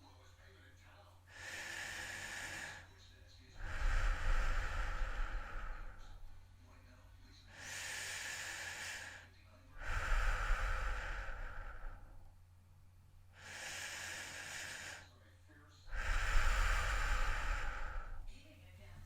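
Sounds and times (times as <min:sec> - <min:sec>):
person breathing heavily: 0:01.3 - 0:06.5, 0:07.4 - 0:12.4, 0:13.3 - 0:15.2, 0:15.9 - 0:18.4
breath rumble on microphone: 0:03.6 - 0:06.4, 0:09.8 - 0:12.3, 0:15.9 - 0:18.4.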